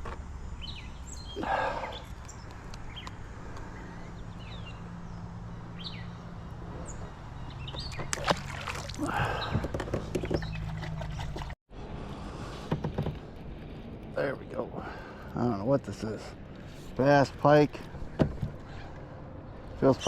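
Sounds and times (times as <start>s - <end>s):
bird chirps: 0.6s - 3.2s, 3.8s - 6.2s, 6.8s - 8.1s, 10.2s - 11.4s
water splashing: 7.8s - 11.6s.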